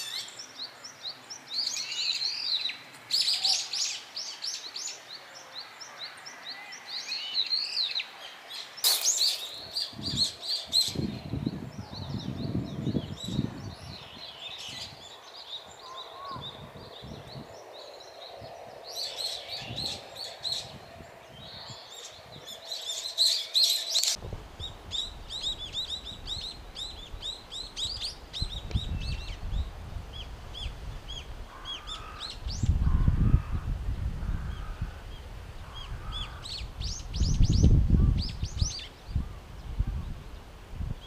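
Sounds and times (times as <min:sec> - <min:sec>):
birds calling shrilly: 0:05.8 - 0:11.0.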